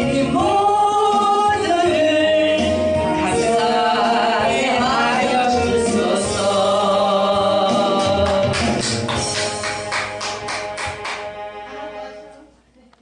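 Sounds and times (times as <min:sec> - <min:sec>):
people singing a hymn: 0:00.0 - 0:08.9
instrumental accompaniment: 0:00.0 - 0:12.6.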